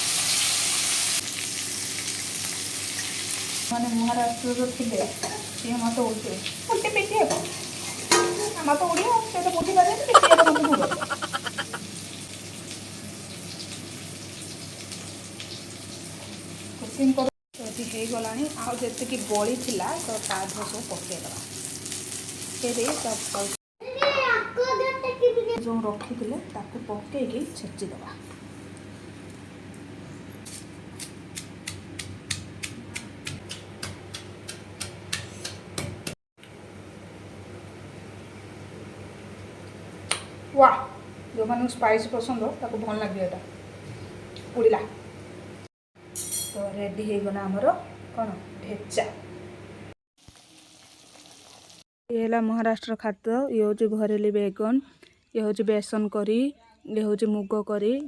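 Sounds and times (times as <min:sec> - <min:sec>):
food sizzling in hot oil: 0:00.0 - 0:23.6, 0:50.2 - 0:51.9
pestle pounding: 0:31.4 - 0:36.1.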